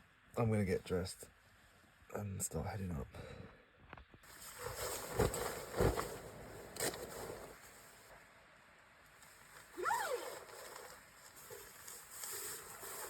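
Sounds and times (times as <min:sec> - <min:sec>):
clothing rustling: 0:04.2 - 0:08.0, 0:09.3 - 0:13.0.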